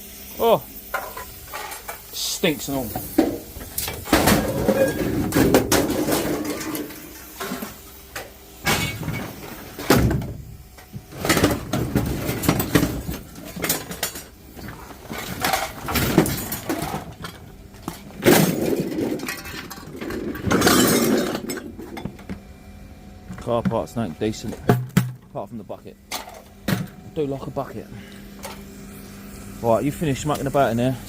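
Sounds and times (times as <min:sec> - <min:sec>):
scrap metal clattering: 0:04.0 - 0:07.8, 0:11.2 - 0:22.2.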